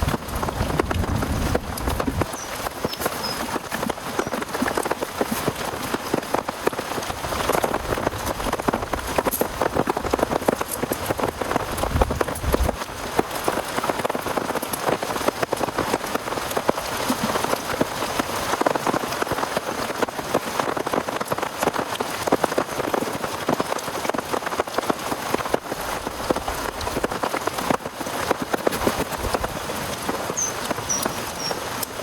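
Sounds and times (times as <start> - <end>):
heavy rain falling: 0.0 - 32.0
raindrops ticking on a surface: 0.0 - 32.0.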